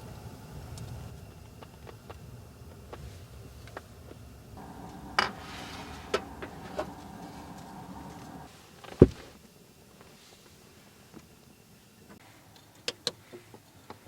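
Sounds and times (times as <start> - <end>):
small electric motor humming: 4.6 - 8.5.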